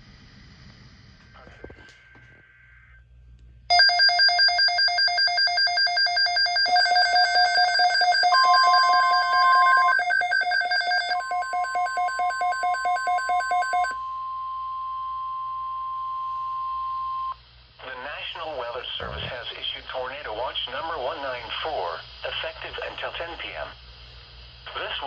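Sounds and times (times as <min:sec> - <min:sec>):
electronic alarm pulsing trill: 0:03.7 - 0:14.1
steady high warning tone: 0:03.7 - 0:17.4.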